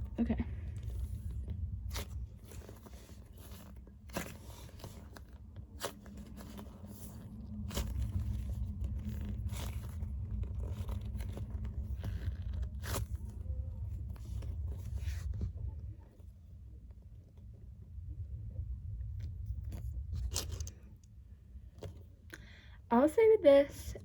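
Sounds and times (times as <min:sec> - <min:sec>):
low handling rumble: 0:00.0 - 0:24.0
squishy toys crackling and crunching: 0:00.5 - 0:15.4, 0:19.5 - 0:21.2.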